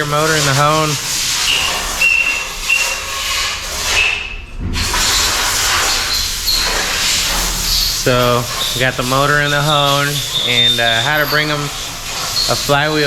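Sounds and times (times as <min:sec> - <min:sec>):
honing machine hissing and scraping: 0:04.9 - 0:13.0.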